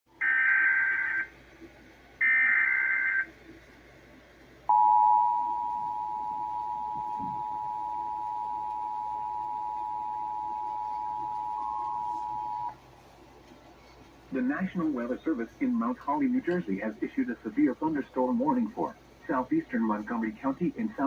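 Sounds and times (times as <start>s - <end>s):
warbling digital data screech: 2.2s - 3.3s
two-tone attention beep: 4.7s - 12.7s.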